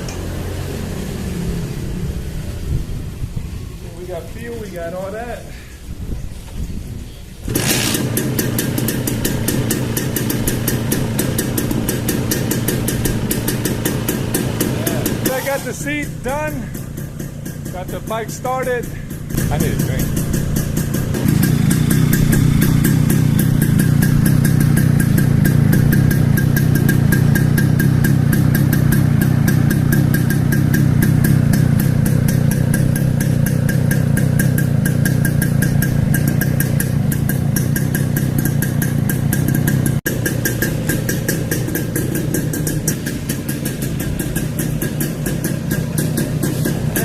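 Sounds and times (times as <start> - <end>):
two-stroke motorcycle engine idling: 7.5 - 47.0.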